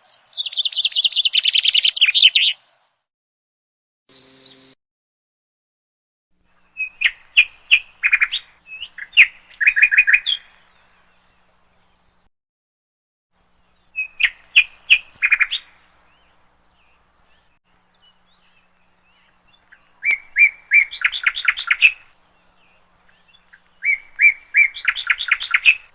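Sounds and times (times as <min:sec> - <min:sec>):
songbird singing trills: 0:00.0 - 0:02.6, 0:04.1 - 0:04.8, 0:06.5 - 0:12.3, 0:13.4 - 0:25.9.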